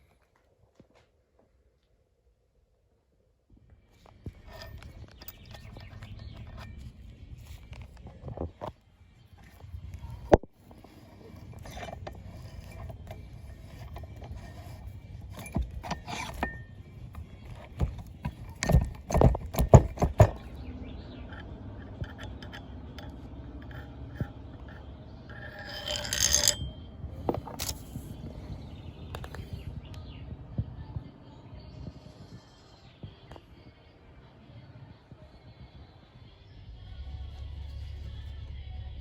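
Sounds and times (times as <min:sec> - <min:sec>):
metal vise parts clanking: 0:04.0 - 0:08.7, 0:09.4 - 0:28.6
metal rubbing and scraping: 0:04.0 - 0:29.9.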